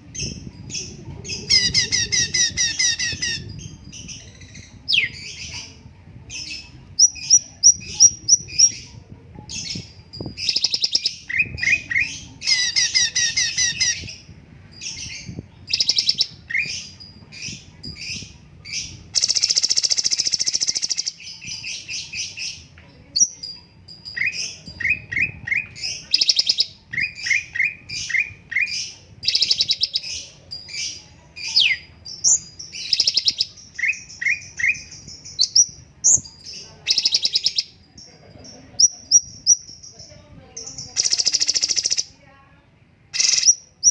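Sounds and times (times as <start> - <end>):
bird singing quick chirps: 38.8 - 42.1, 43.2 - 43.9.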